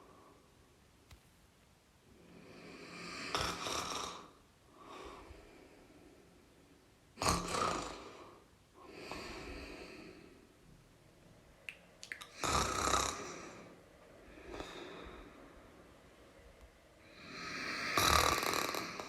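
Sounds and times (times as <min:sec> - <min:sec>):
person snoring: 0:02.3 - 0:05.0, 0:07.2 - 0:10.2, 0:12.3 - 0:15.4, 0:17.0 - 0:19.0.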